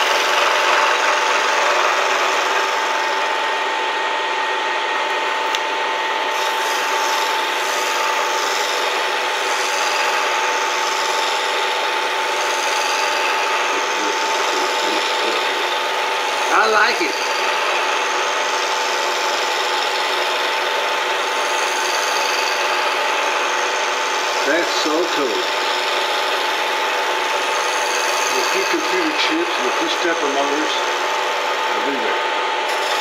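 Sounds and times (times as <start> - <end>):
milling machine cutting: 0.0 - 33.0.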